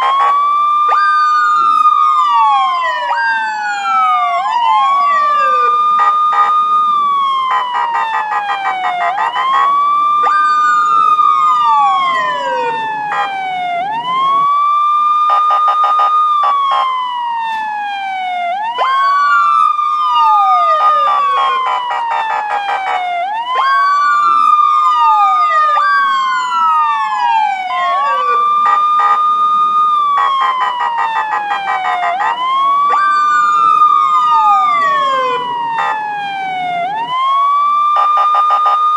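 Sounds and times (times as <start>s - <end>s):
police siren wailing: 0.0s - 38.9s.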